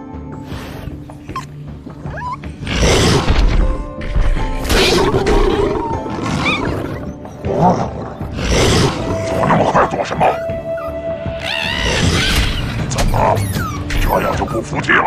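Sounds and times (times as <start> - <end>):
dramatic background music: 0.0 - 15.0
large beast roaring growls: 4.8 - 9.5.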